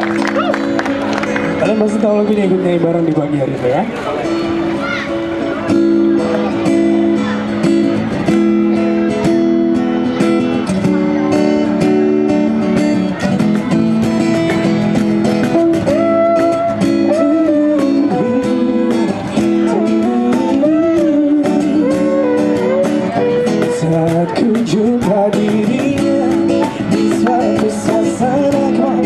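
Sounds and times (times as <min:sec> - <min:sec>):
acoustic guitar strumming: 0:00.0 - 0:29.0
wavering melody line: 0:15.5 - 0:24.4.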